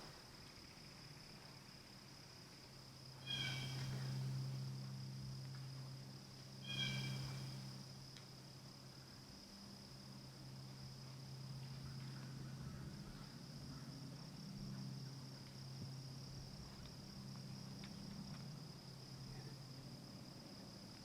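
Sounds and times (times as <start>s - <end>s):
insects trilling: 0.0s - 21.0s
low hum: 0.1s - 21.0s
faint ticks: 8.1s - 8.3s, 16.7s - 18.5s.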